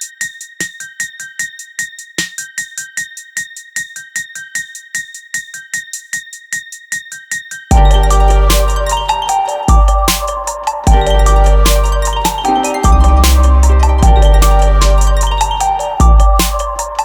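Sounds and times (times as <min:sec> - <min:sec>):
deep bass: 0:07.7 - 0:10.1, 0:10.9 - 0:17.0
repeated high keyboard notes: 0:07.7 - 0:17.0.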